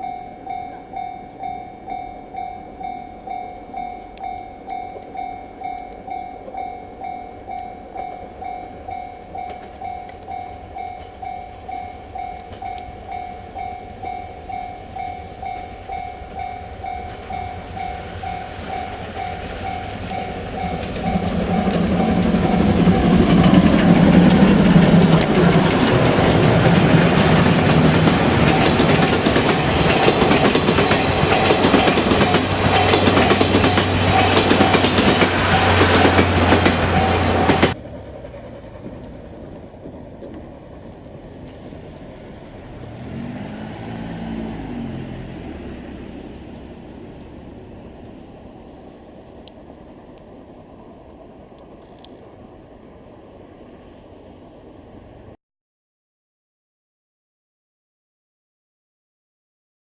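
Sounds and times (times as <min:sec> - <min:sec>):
level-crossing bell ringing: 0:00.0 - 0:23.2, 0:31.1 - 0:37.8
steam train rumbling past: 0:00.0 - 0:55.4
train wheels clattering over rail joints: 0:09.4 - 0:48.2.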